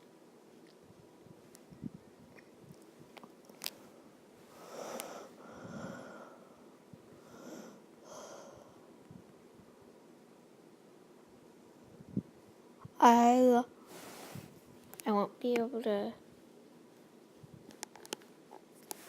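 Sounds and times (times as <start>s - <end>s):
heavy breathing: 4.5s - 8.9s.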